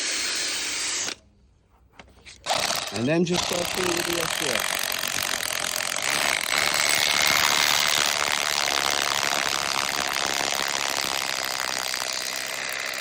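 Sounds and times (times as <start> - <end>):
hammer drill grinding through tile: 0.0 - 1.2, 2.5 - 13.0.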